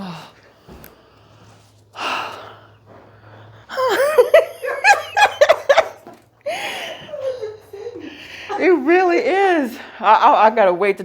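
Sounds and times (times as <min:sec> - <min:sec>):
woman laughing: 0:03.7 - 0:09.2.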